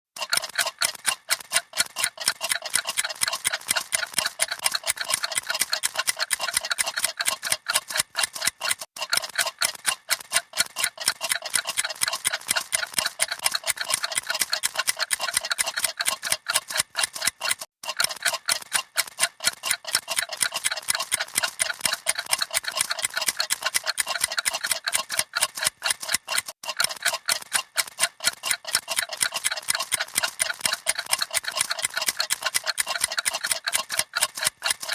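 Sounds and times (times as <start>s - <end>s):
clocks ticking: 0.2s - 34.9s.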